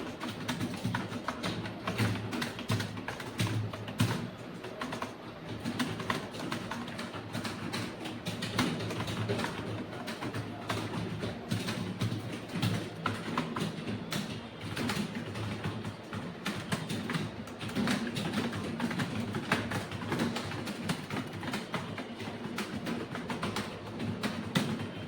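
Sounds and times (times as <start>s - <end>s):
fast keyboard typing: 0.0s - 25.0s.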